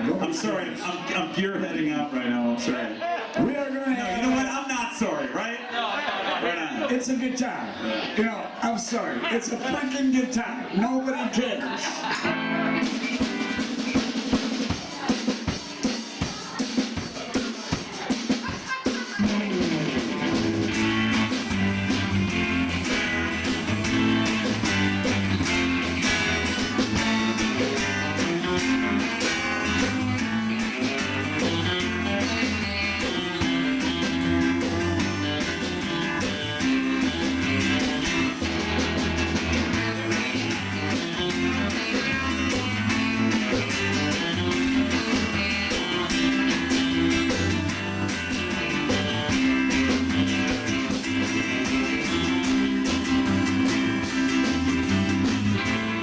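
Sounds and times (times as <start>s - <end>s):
bass guitar: 0.0s - 2.8s, 11.6s - 56.0s
drums keeping a steady beat: 11.6s - 56.0s
twangy electric lead guitar: 12.0s - 56.0s.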